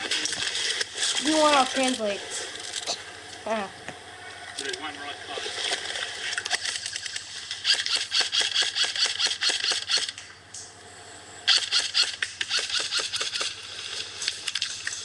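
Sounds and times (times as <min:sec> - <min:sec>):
airsoft guns firing bursts: 0:06.6 - 0:10.2, 0:11.5 - 0:13.6.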